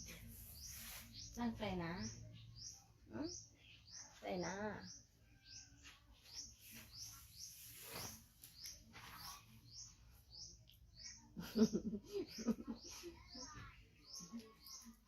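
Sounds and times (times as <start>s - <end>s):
swishing rustle: 7.5s - 8.5s.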